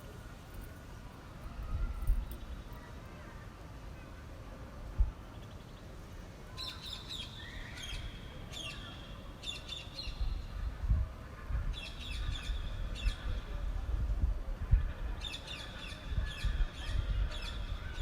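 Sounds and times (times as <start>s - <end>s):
wind buffeting microphone: 1.5s - 2.7s, 10.1s - 18.0s.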